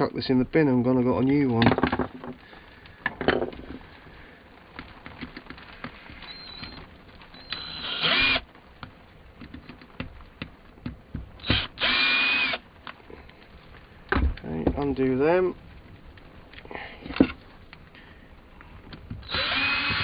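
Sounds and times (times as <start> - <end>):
electric screwdriver running: 7.4 - 8.4, 11.4 - 12.6, 19.2 - 20.0.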